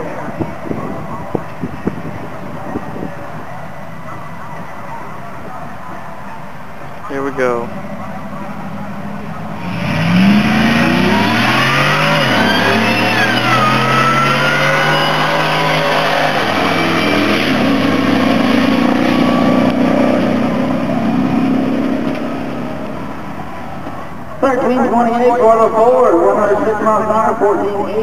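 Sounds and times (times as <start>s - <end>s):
engine accelerating hard: 7.6s - 24.4s.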